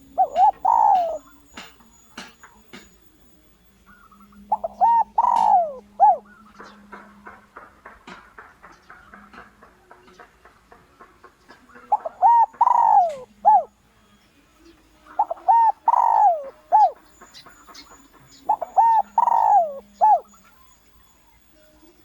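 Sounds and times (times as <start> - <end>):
dove cooing: 0.0 - 2.3, 4.4 - 6.4, 11.8 - 13.7, 15.2 - 17.0, 18.4 - 20.4.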